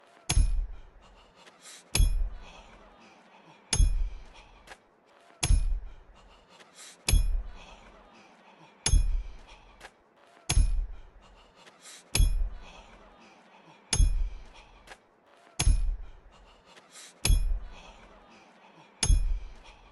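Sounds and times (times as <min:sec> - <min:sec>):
hammer driving a nail: 0:00.3 - 0:00.6, 0:10.5 - 0:10.8, 0:15.6 - 0:16.0.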